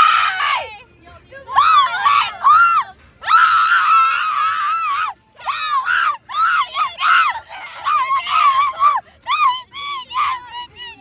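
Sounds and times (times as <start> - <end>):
girl screaming: 1.6 - 9.5.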